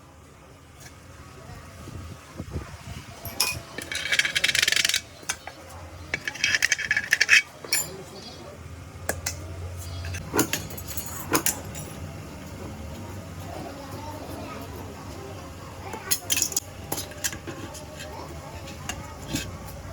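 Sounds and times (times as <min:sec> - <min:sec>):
metal scraping on wok: 0:03.3 - 0:08.0.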